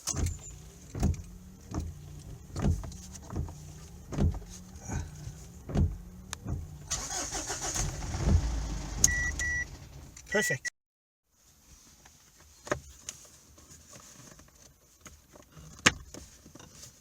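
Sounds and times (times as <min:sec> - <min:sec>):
low engine hum: 0:00.2 - 0:10.2.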